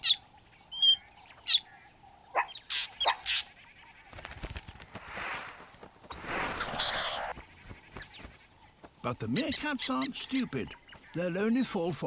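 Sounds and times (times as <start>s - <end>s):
noisy rustling: 4.1s - 9.0s
bird alarm calls: 5.1s - 12.0s.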